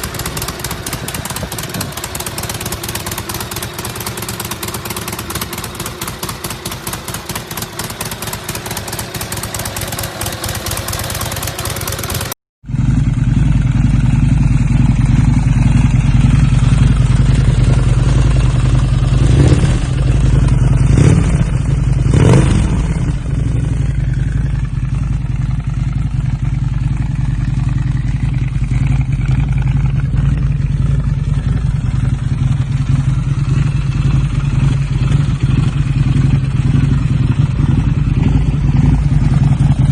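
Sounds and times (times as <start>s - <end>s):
motorcycle engine idling and revving: 0.0s - 39.9s
motorcycle engine running: 0.0s - 39.9s.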